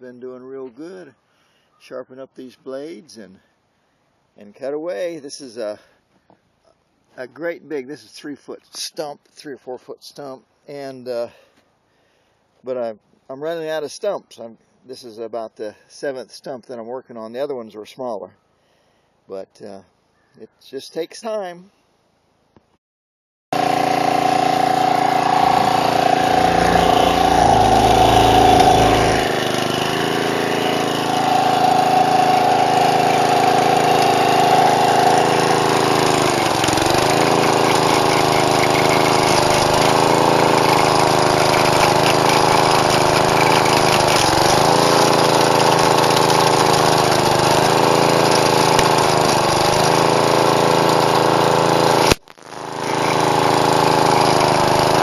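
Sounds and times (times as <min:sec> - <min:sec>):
blade grinding tree stump: 0:23.6 - 0:55.0
small gas engine running: 0:23.6 - 0:55.0.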